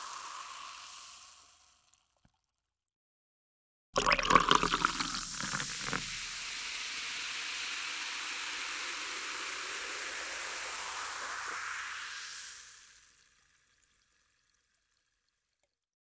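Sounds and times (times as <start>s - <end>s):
water splashing and gurgling: 4.0s - 6.2s.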